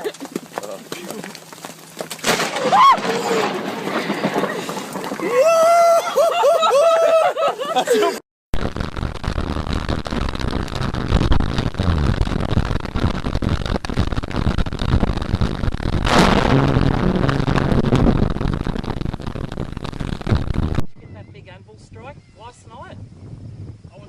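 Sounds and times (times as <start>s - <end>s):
crackling storm noise: 1.3s - 6.0s, 8.6s - 21.0s
loud thunderclap: 2.2s - 5.4s, 11.1s - 21.0s.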